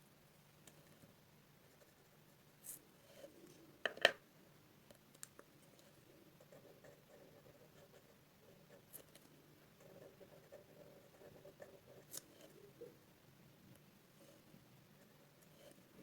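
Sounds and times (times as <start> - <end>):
pen scratching on paper: 9.8 - 12.6.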